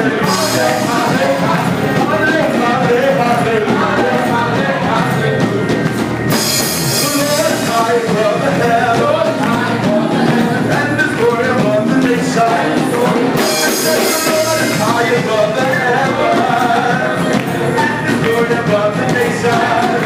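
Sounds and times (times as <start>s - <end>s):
gospel group singing with band: 0.0s - 20.0s
cymbals crashing: 6.3s - 7.7s.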